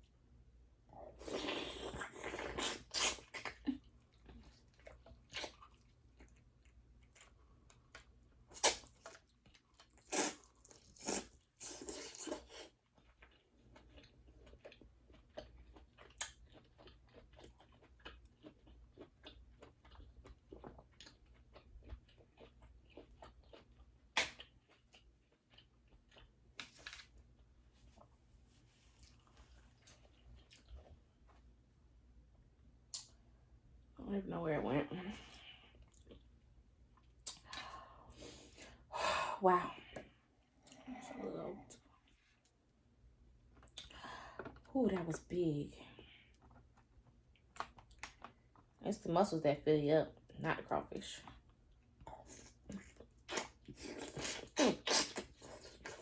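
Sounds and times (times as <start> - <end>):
chewing and crunching: 1.2 - 28.1, 28.8 - 31.5, 35.2 - 37.8, 43.4 - 48.8, 51.2 - 56.0.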